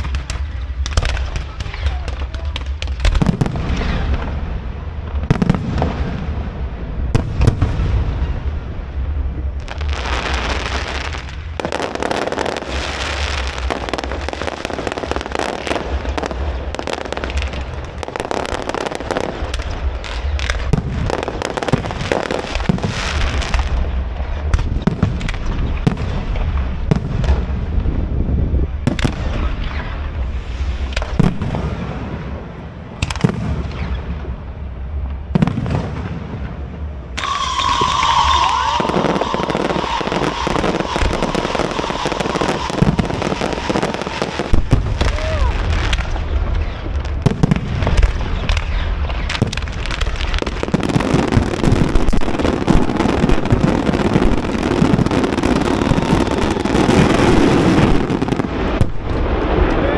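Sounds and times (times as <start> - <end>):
deep rumble: 0.0 - 59.9
fireworks crackling: 0.0 - 59.9
firework shells bursting: 37.2 - 59.7.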